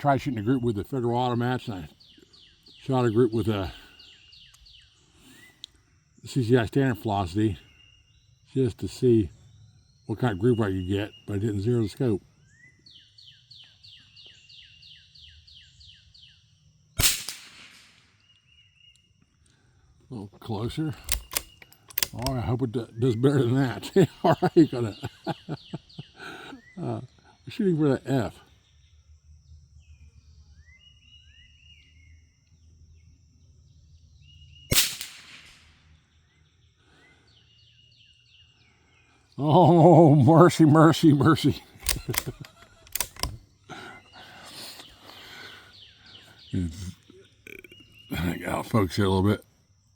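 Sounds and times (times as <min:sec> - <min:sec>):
bird singing: 0:00.0 - 0:17.0, 0:17.9 - 0:49.9
rifle shot: 0:17.0 - 0:18.1, 0:34.7 - 0:35.8
small click: 0:41.8 - 0:43.4.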